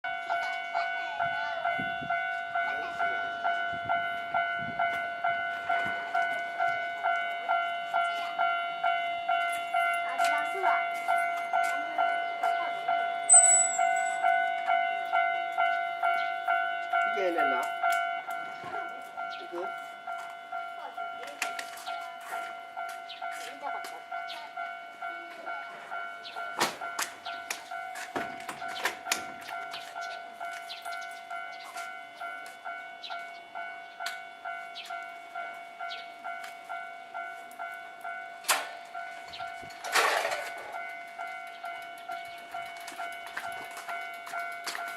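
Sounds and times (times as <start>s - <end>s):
level crossing alarm ringing: 0.0s - 44.9s
electronic two-tone crossing chime: 13.3s - 14.3s.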